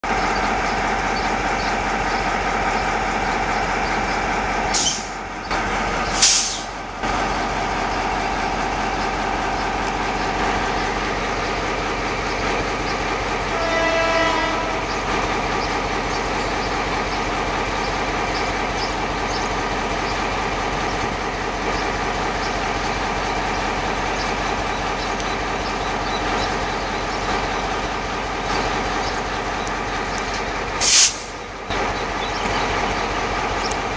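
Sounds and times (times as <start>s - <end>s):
diesel locomotive engine drone: 0.0s - 33.9s
short hisses: 4.7s - 5.2s, 6.1s - 6.8s, 30.8s - 31.4s
locomotive horn blast: 13.4s - 15.2s.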